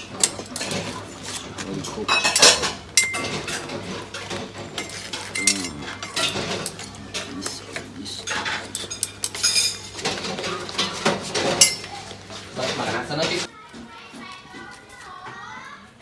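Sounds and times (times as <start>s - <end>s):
metal cookware clattering: 0.0s - 13.5s
person speaking: 5.2s - 8.7s.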